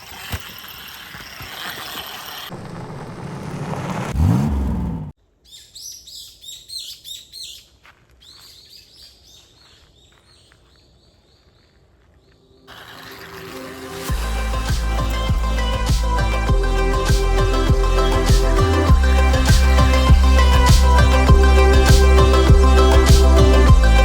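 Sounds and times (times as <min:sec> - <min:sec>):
loud rushing noise swooping: 0:02.5 - 0:05.1
music: 0:12.7 - 0:24.0.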